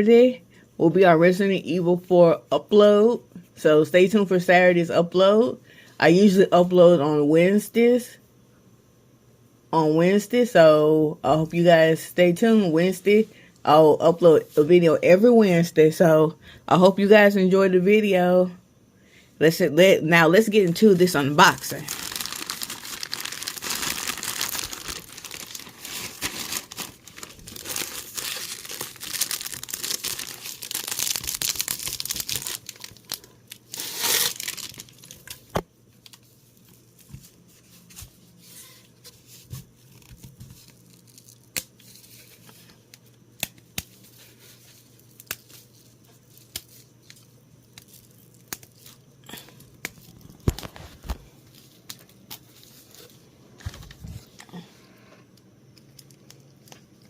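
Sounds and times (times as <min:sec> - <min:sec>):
packaging tearing and rustling: 0:21.0 - 0:37.3, 0:39.8 - 0:42.6, 0:49.8 - 0:54.3
small clicks and crinkles: 0:34.6 - 0:38.2, 0:39.0 - 0:57.0.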